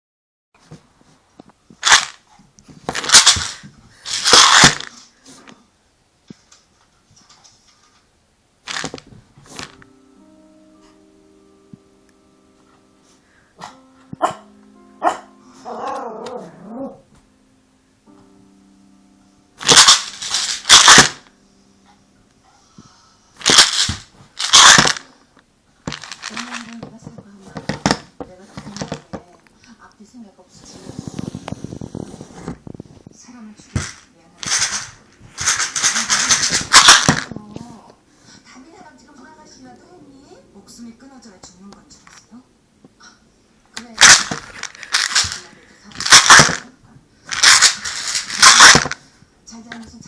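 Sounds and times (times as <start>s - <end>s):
object shaken to rattle: 1.8s - 2.2s, 2.9s - 5.0s, 8.7s - 9.8s, 19.6s - 21.3s, 23.4s - 25.1s, 25.9s - 26.8s, 33.8s - 37.3s, 43.9s - 46.7s, 47.3s - 49.0s.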